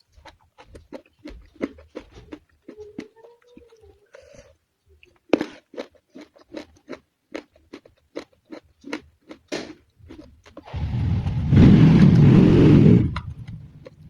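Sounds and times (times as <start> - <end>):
crunchy vegetables chewing: 0.0 - 14.0
loud rumbling noise: 10.7 - 14.0.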